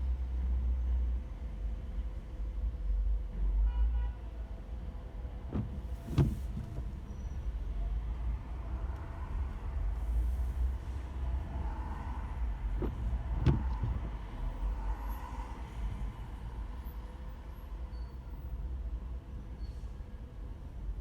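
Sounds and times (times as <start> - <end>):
car driving rumble: 4.5 - 21.0.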